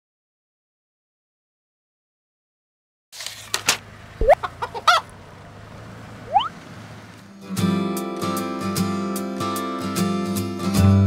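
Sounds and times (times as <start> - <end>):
short rising chirps: 6.3 - 6.6
strummed acoustic guitar music: 7.4 - 11.0.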